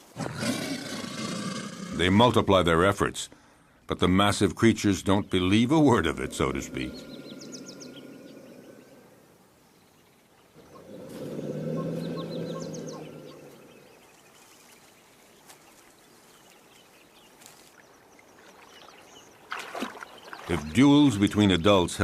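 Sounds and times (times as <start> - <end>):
large animal rumbling call: 5.8 - 9.3, 10.6 - 14.0
faint bird chirps: 6.2 - 20.8.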